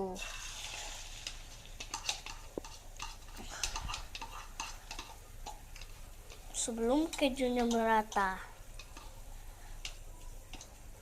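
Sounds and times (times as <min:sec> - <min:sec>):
egg hissing in frying pan: 0:00.0 - 0:11.0
utensil scraping a pan: 0:00.2 - 0:06.7.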